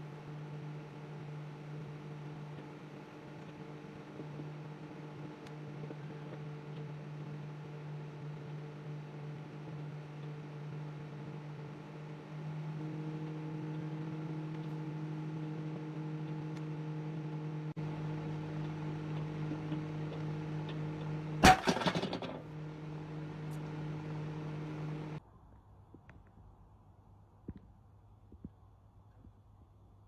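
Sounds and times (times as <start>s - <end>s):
microwave oven humming: 0.0s - 25.2s.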